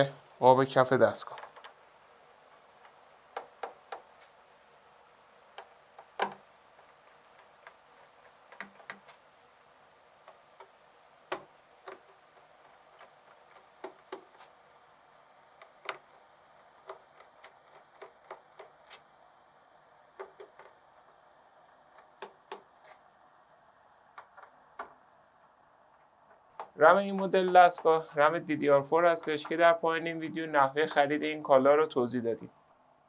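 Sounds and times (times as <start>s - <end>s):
screwdriver clicks and taps: 2.8s - 4.4s, 5.5s - 9.2s, 10.2s - 14.6s, 15.6s - 19.0s, 20.2s - 20.8s, 21.9s - 23.0s, 24.1s - 25.0s, 26.0s - 27.9s.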